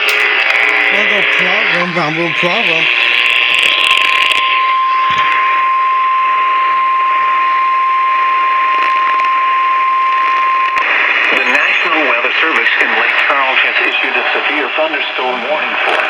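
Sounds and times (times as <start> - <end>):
radio static: 0.0 - 3.6, 10.8 - 16.0.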